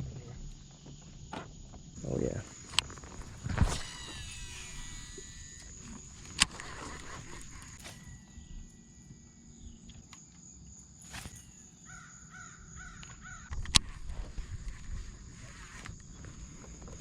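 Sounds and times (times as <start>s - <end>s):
high insect drone: 0.0s - 17.0s
crow cawing: 11.8s - 13.5s.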